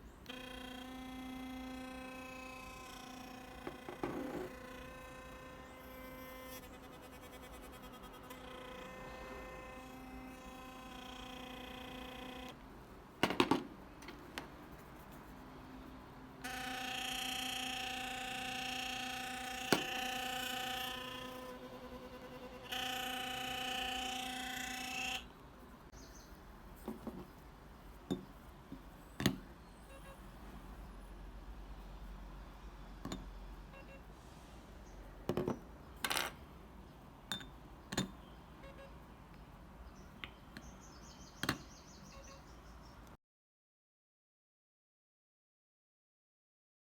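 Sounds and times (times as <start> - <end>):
electric toothbrush buzzing: 0.2 - 12.6, 16.4 - 25.3.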